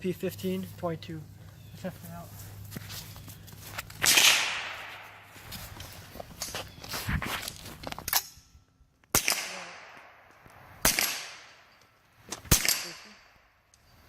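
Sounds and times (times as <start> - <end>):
rifle shots echoing: 4.0 - 5.3, 9.1 - 11.7, 12.5 - 13.3.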